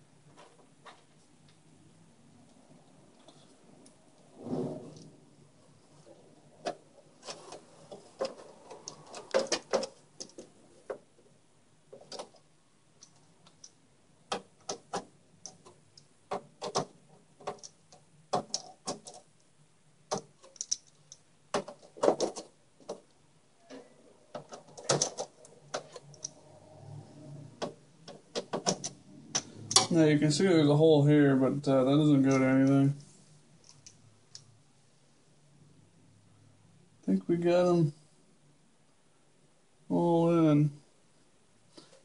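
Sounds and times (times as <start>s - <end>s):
small clicks and metal taps of screws: 13.0s - 19.5s, 20.1s - 21.9s, 33.6s - 34.5s.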